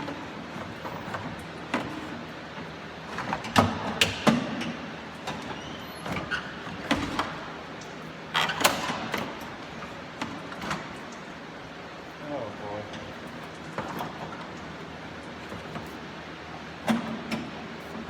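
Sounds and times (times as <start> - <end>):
knocks and clunks of parts: 16.8 - 18.0.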